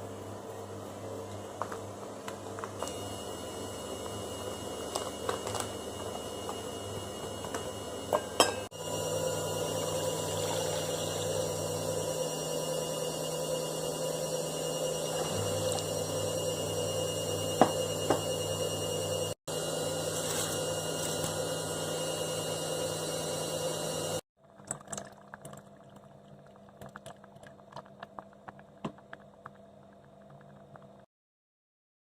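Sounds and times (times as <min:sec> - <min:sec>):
kitchen appliance electric hum: 0:00.0 - 0:24.2.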